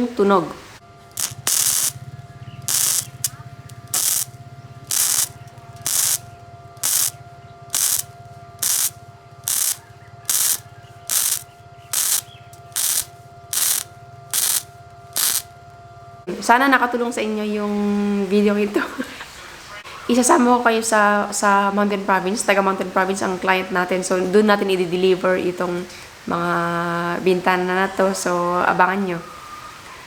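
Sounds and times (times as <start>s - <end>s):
steady low hum: 0.0s - 30.0s
welding arc crackling: 1.0s - 15.8s.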